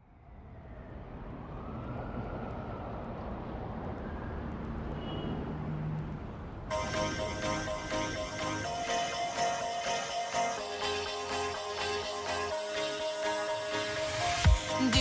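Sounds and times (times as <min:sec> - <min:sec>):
traffic rumble: 0:00.0 - 0:08.8
music with string-like pulse: 0:06.7 - 0:15.0.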